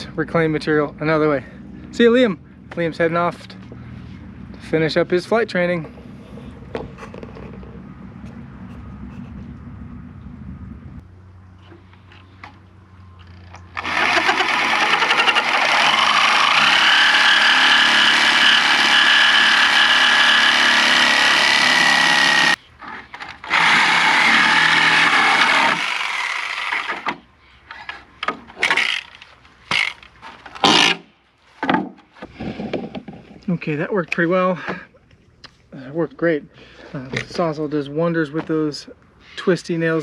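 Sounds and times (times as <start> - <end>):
reciprocating saw cutting nails: 13.8 - 22.6.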